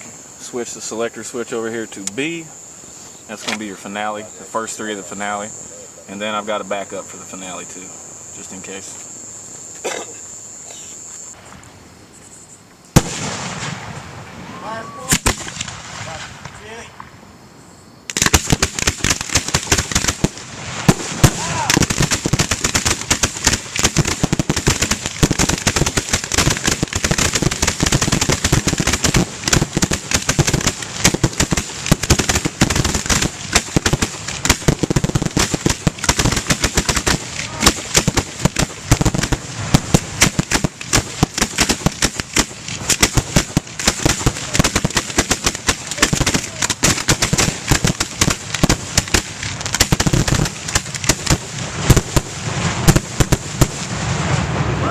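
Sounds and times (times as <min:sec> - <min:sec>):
fireworks cracks and bangs: 0:12.9 - 0:17.2, 0:18.1 - 0:54.9.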